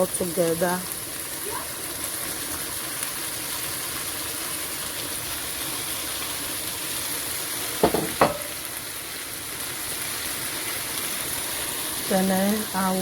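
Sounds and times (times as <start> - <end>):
vegetables sizzling in a pot: 0.0 - 13.0
short knocks: 7.8 - 8.5.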